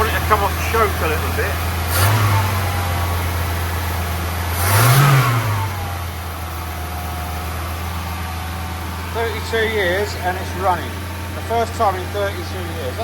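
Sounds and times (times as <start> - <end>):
car engine idling and revving: 0.0 - 13.0.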